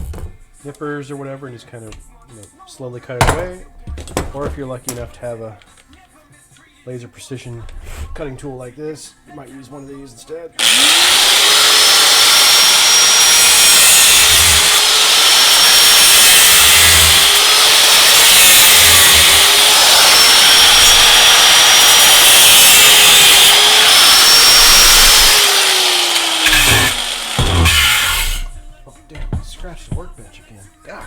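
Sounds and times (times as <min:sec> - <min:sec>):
power tool cutting plastic: 0:10.6 - 0:28.6.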